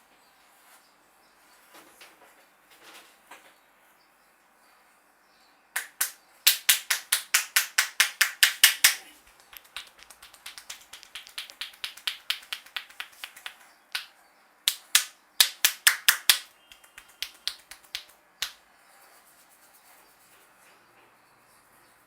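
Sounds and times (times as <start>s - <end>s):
fingers snapping in head massage: 5.8s - 14.1s, 14.7s - 18.6s.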